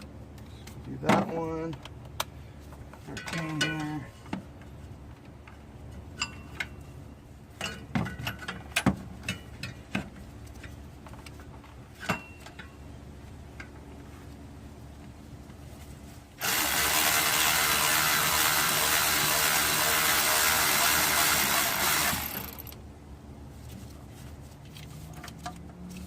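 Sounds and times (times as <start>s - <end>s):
power tool running: 16.4s - 22.8s.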